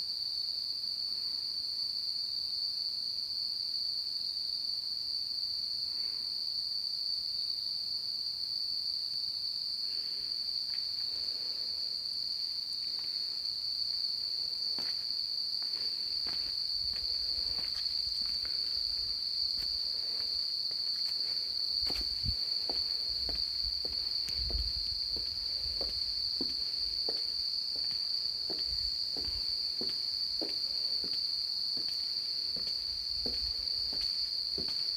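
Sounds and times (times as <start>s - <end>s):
insects droning: 0.0s - 34.9s
footsteps: 14.8s - 34.9s.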